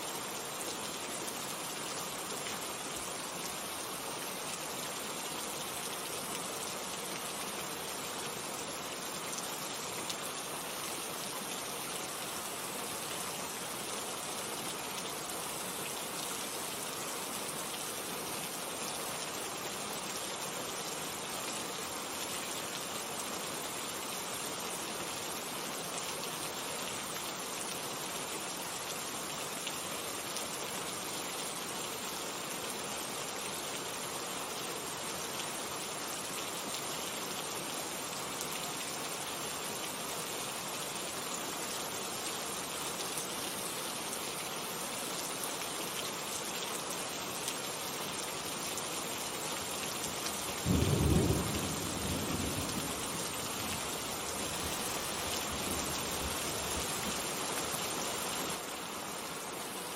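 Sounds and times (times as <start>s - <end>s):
steady rainfall: 0.0s - 59.9s
low thunder rumble: 50.7s - 53.7s.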